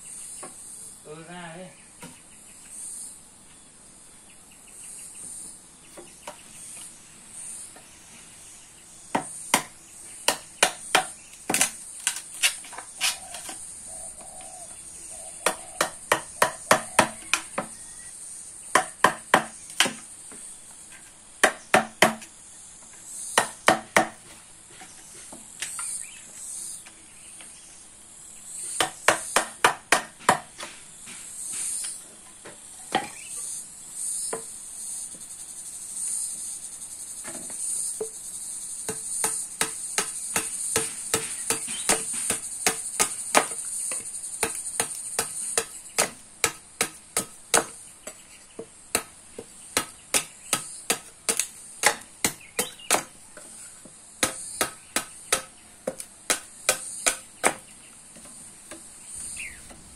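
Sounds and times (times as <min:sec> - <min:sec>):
high insect drone: 0:02.5 - 0:59.9
sharp knocks: 0:38.9 - 0:47.8.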